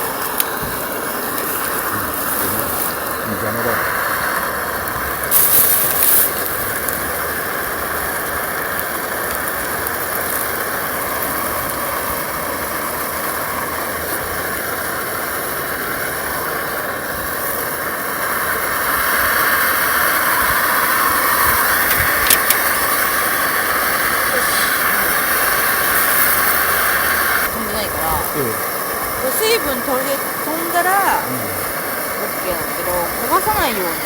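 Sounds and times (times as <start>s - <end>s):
food sizzling in hot oil: 0.0s - 34.0s
sharp clicks: 21.6s - 23.1s.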